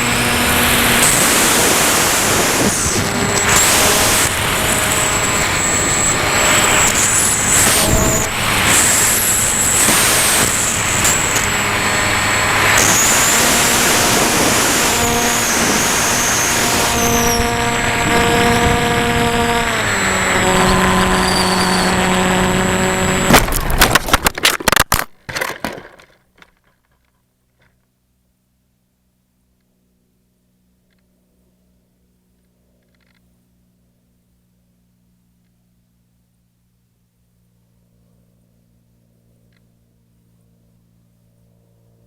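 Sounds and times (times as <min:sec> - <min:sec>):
electric motor and propeller humming: 0:00.0 - 0:24.5
plane crashing knocks and thuds: 0:23.0 - 0:26.0.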